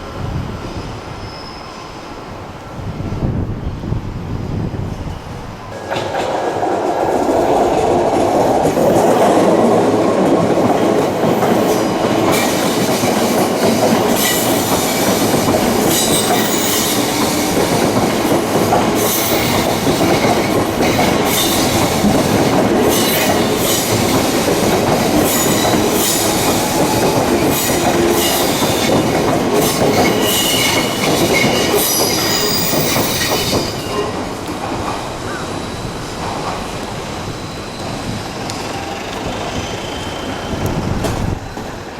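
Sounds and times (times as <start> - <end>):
train wheels rumbling on rails: 0.0 - 41.9
wheel squeal: 1.2 - 1.9, 37.1 - 41.8
clacks over rail joints: 5.7 - 35.1.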